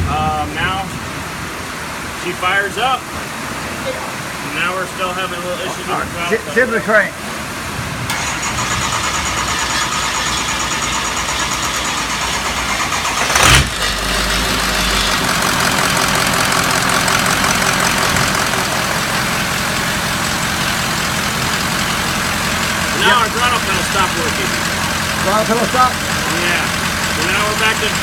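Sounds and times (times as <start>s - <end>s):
diesel engine idling: 3.2s - 28.0s
loud engine burst: 8.1s - 28.0s.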